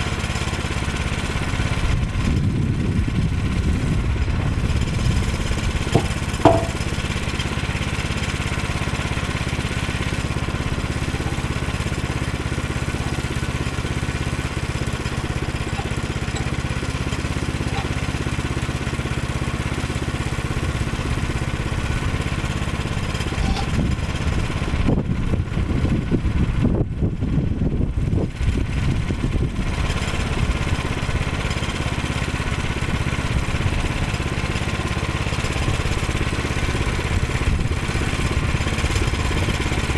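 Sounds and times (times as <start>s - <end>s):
small gasoline engine running: 0.0s - 39.9s
sharp knocks: 5.9s - 7.0s.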